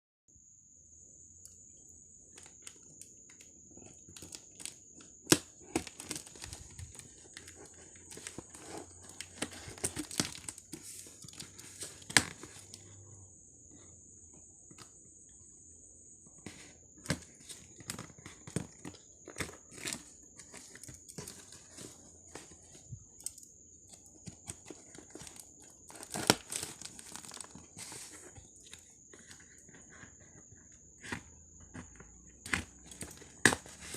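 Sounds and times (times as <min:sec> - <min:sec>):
packaging crinkling and tearing: 0:04.1 - 0:12.8, 0:24.4 - 0:28.3.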